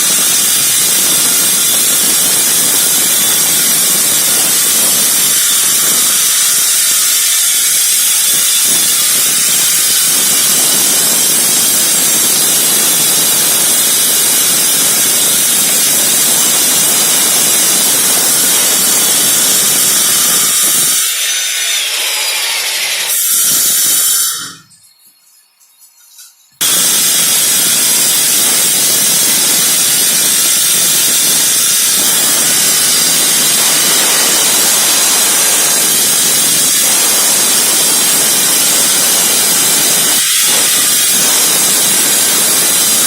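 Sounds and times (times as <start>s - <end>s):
power cutter grinding concrete: 0.0s - 24.7s, 26.6s - 43.0s.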